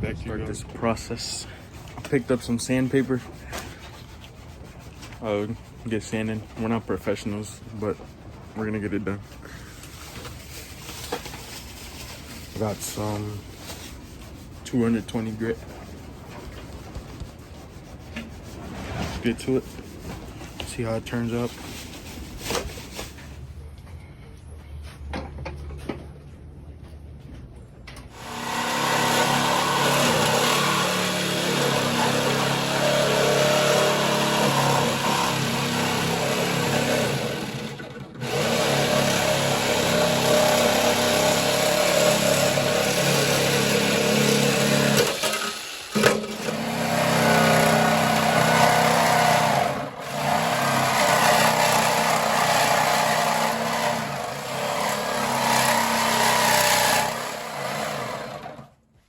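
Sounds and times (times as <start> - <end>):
power sander on sheet metal: 0.0 - 16.7, 28.1 - 58.7.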